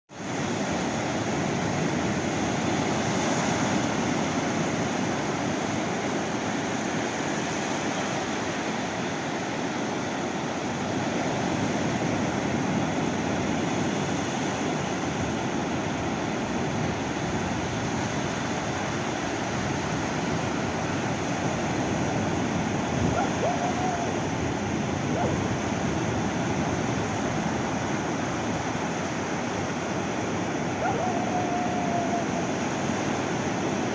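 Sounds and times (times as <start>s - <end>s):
ocean waves and surf: 0.1s - 33.9s
faint high calls: 23.1s - 24.3s, 30.8s - 32.9s.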